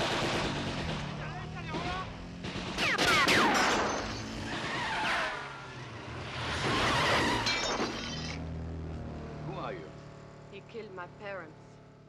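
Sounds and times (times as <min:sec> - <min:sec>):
car tyres squealing and skidding: 0:03.0 - 0:08.5
shattering crash: 0:06.6 - 0:08.4.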